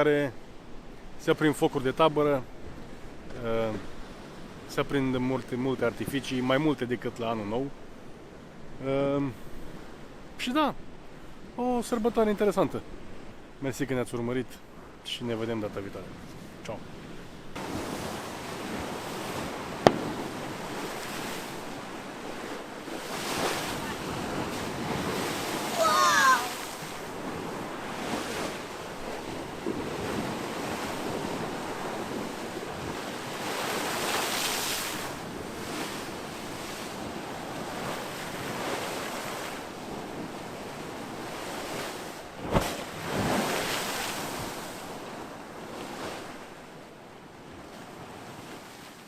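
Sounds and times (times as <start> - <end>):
waves washing against shore: 14.6 - 49.0
sharp crack: 19.8 - 20.4.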